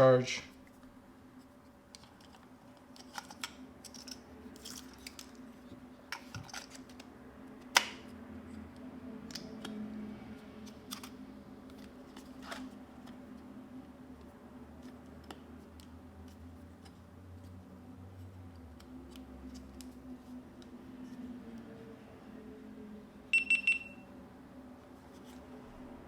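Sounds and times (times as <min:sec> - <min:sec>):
faint steady hum: 0:00.0 - 0:26.0
plastic clicks and handling: 0:01.9 - 0:08.1
sharp plastic snap: 0:07.6 - 0:08.0.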